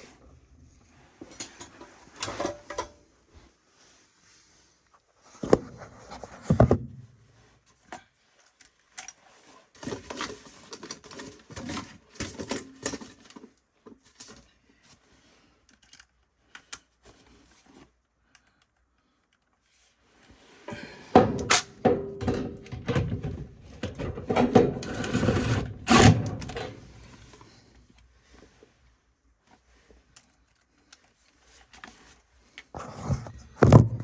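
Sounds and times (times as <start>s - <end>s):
tools clicking and scraping on metal: 1.2s - 3.0s.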